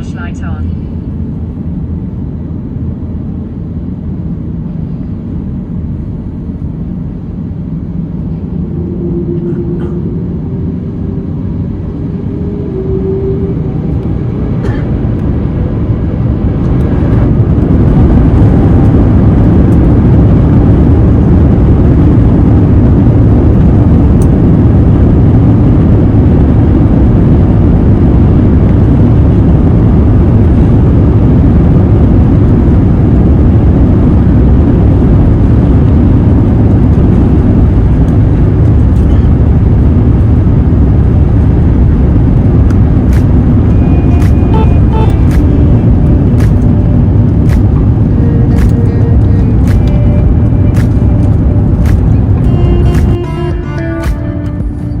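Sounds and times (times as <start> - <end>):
jet engines roaring: 0.0 - 55.0
rushing airframe noise: 7.4 - 20.8.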